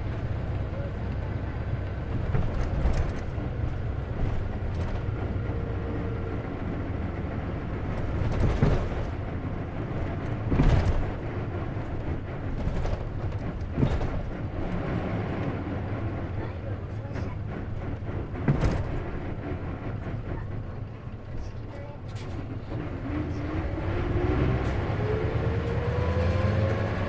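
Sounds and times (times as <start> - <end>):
bus engine and road rumble: 0.0 - 27.0
knocks and rattles: 7.8 - 15.6, 17.1 - 20.7.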